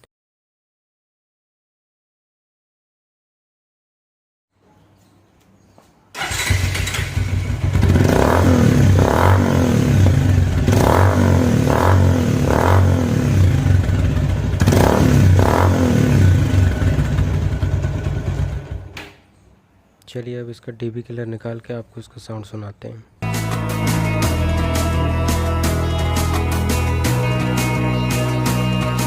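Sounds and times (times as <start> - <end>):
motorcycle engine revving: 6.2 - 19.0.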